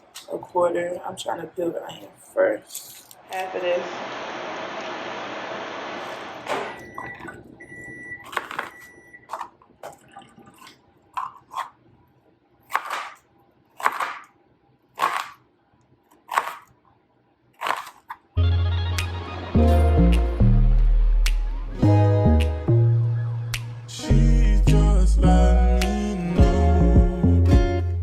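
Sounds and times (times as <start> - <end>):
knife chopping on cutting board: 12.7 - 13.2, 13.8 - 14.3, 15.0 - 15.4, 16.2 - 16.7, 17.6 - 18.2.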